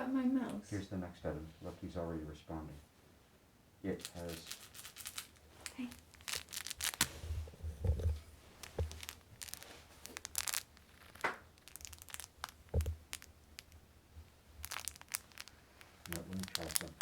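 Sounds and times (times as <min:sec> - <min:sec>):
toy packaging crinkling and tearing: 0:04.0 - 0:07.4, 0:08.6 - 0:13.9, 0:14.5 - 0:17.0
soft thumps: 0:07.0 - 0:09.1, 0:12.7 - 0:13.1.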